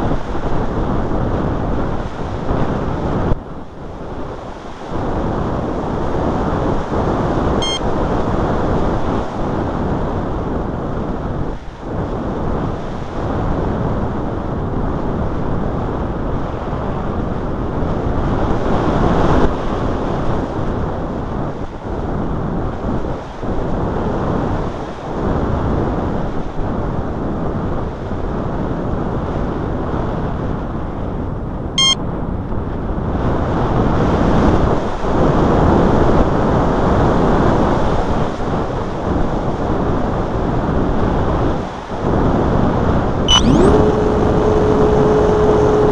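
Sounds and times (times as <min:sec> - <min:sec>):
wind rushing over microphone: 0:00.0 - 0:45.9
short electronic beeps: 0:07.6 - 0:07.8, 0:31.8 - 0:32.0, 0:43.3 - 0:45.9.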